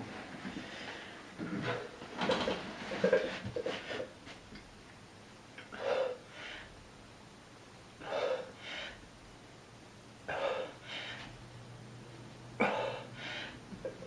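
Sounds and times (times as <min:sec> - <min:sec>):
man breathing heavily: 0:05.7 - 0:06.8, 0:08.0 - 0:09.1, 0:10.3 - 0:11.4, 0:12.6 - 0:13.8.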